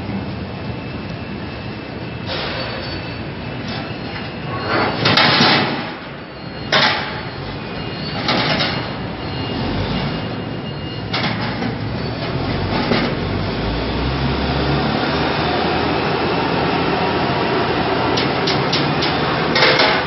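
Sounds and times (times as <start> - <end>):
workshop din: 17.1 - 20.0.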